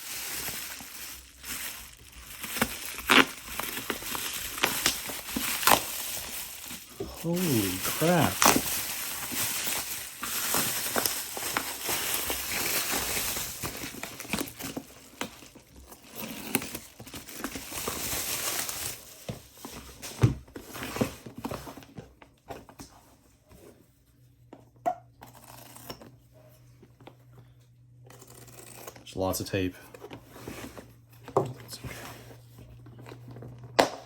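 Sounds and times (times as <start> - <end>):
packing tape tearing: 0.0 - 19.0
bubble wrap crinkling: 0.0 - 19.9
rustling and handling noises: 0.0 - 33.8.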